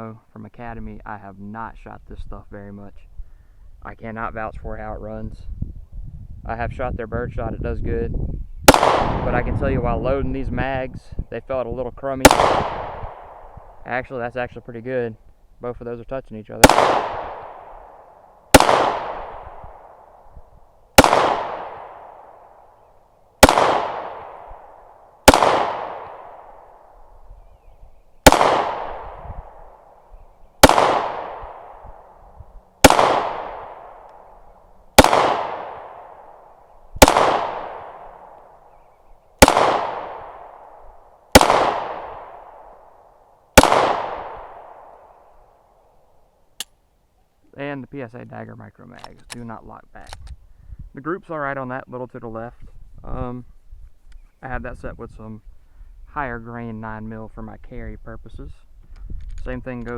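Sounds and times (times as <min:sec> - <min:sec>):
pistol shots with echo: 0:08.6 - 0:09.6, 0:12.2 - 0:13.8, 0:16.6 - 0:20.2, 0:21.0 - 0:22.7, 0:23.4 - 0:27.0, 0:28.2 - 0:30.0, 0:30.6 - 0:32.2, 0:32.8 - 0:34.3, 0:35.0 - 0:38.8, 0:39.4 - 0:45.2.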